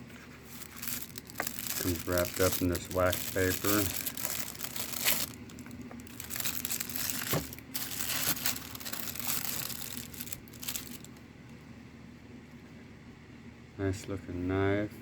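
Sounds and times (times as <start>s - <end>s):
wax paper crinkling: 0.0s - 11.2s.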